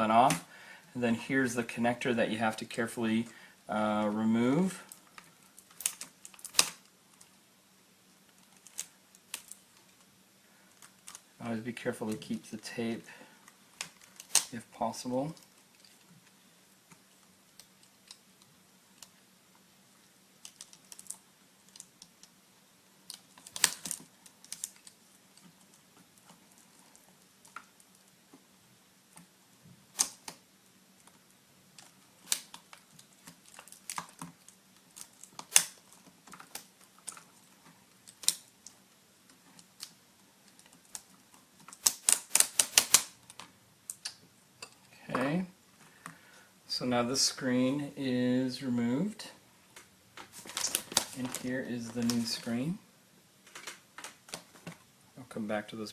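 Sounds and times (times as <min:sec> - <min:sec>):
plastic laptop parts clicking: 0:23.0 - 0:27.7, 0:39.6 - 0:44.1, 0:49.8 - 0:51.4, 0:53.5 - 0:54.8.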